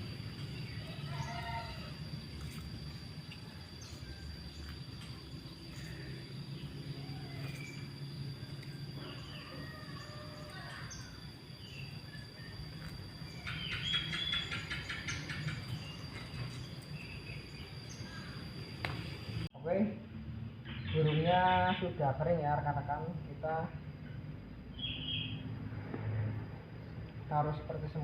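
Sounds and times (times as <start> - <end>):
small birds chirping: 0.0 - 19.4, 24.5 - 25.5
high-pitched whine: 0.0 - 28.0
outdoor background noise: 0.0 - 28.0.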